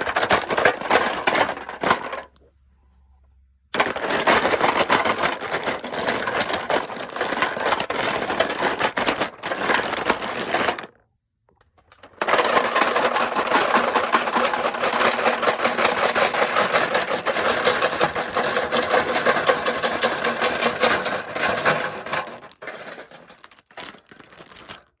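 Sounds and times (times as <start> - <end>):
plastic pens clicking and scratching: 0.0 - 2.4, 3.8 - 10.9, 11.8 - 25.0.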